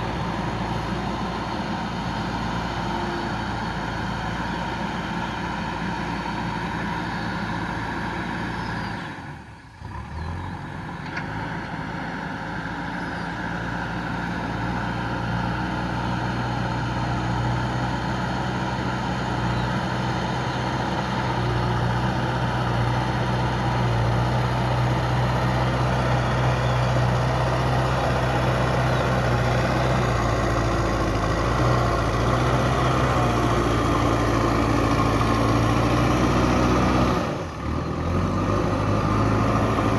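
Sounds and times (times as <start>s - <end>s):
diesel engine running: 0.0s - 39.9s.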